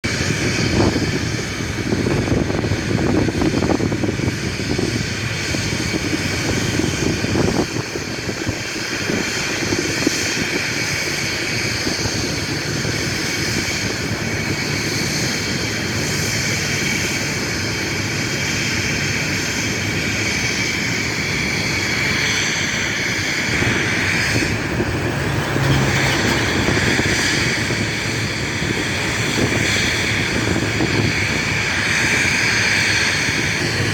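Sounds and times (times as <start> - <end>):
jet engines running: 0.0 - 33.9.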